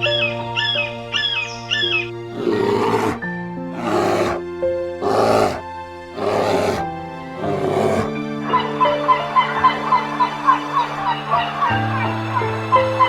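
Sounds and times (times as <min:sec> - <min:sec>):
background music: 0:00.0 - 0:13.0
big cat roaring: 0:02.3 - 0:08.2.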